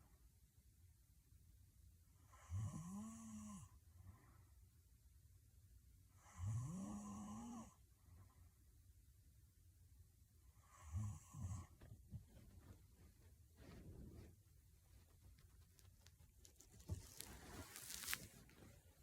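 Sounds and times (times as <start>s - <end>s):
woman snoring heavily: 2.3s - 3.7s, 6.2s - 7.7s.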